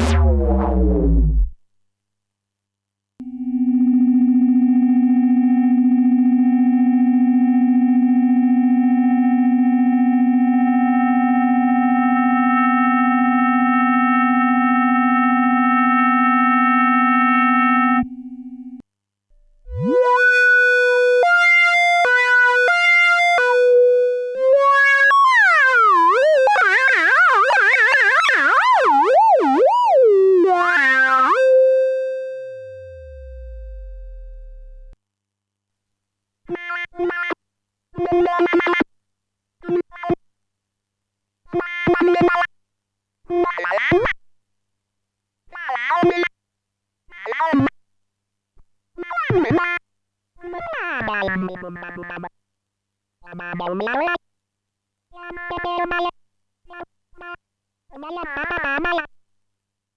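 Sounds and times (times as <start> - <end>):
held electronic tone: 0.0 - 1.6, 28.5 - 35.0
quick rising sweep: 0.0 - 1.6
steady buzzy synth tone: 0.0 - 1.6, 27.5 - 35.0.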